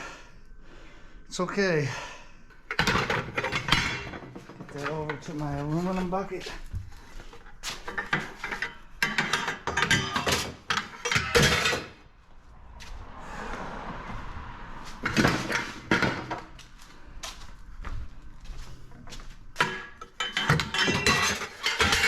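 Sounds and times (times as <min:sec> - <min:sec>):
scrap aluminum parts clanking: 0:02.7 - 0:12.0, 0:15.0 - 0:16.5, 0:19.6 - 0:22.0
rushing noise: 0:12.0 - 0:17.2.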